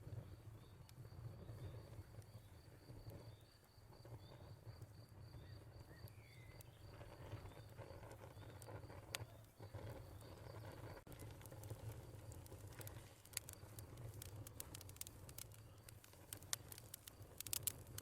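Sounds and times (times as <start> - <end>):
crackling fire with pops: 0.0 - 18.0
cricket chirping: 0.0 - 18.0.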